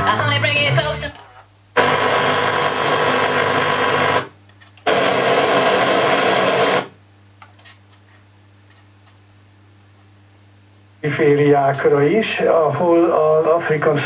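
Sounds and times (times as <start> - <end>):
music on car radio: 0.0 - 1.2.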